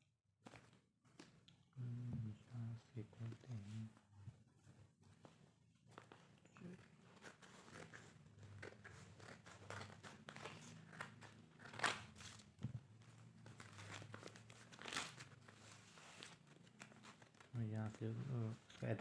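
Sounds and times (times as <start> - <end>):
wrapping crinkling and rustling: 5.8 - 19.0
paper ripping: 7.2 - 12.5, 13.4 - 17.6.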